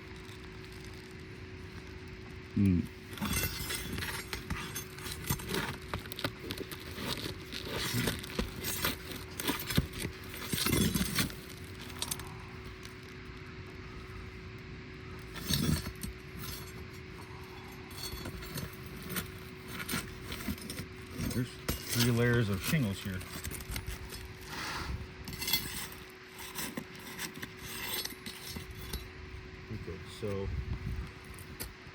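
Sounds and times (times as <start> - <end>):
faint steady hum: 0.0 - 31.9
roof shingles scraping and crinkling: 3.1 - 13.3, 18.0 - 29.0.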